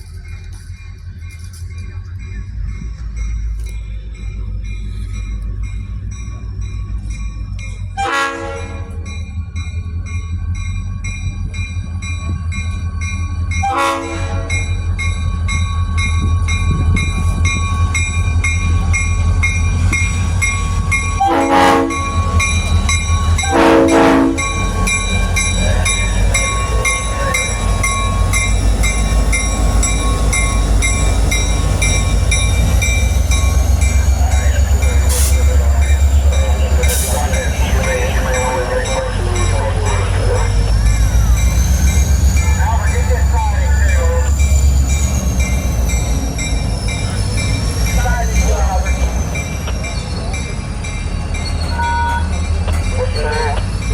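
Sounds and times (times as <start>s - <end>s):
diesel train rumbling: 0.0s - 53.9s
train horn blasts: 8.0s - 9.1s, 13.6s - 14.7s, 21.2s - 25.3s
bell ringing: 9.0s - 53.9s.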